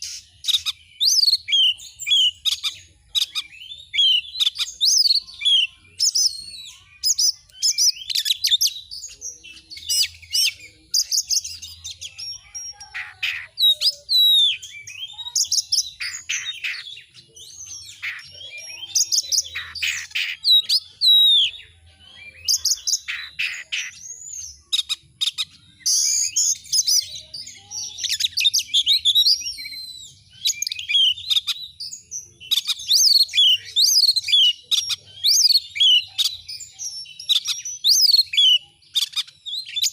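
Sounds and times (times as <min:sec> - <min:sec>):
bird singing whistles: 0:22.4 - 0:39.9.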